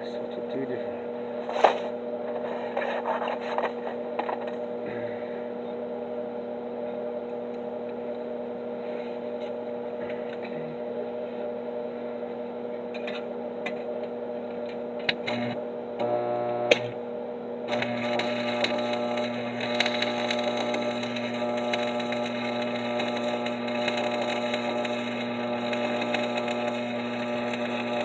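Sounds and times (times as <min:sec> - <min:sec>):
welding machine humming: 0:12.9 - 0:28.0.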